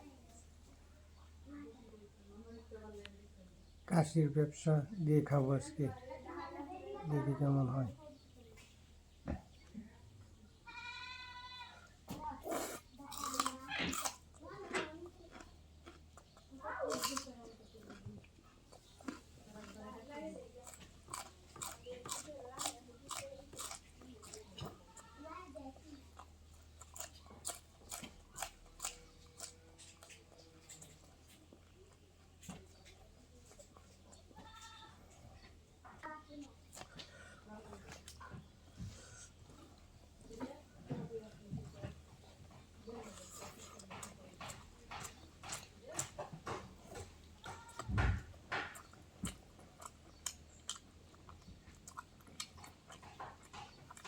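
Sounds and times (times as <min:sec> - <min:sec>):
person chewing and eating: 0:12.4 - 0:35.2, 0:41.9 - 0:54.0.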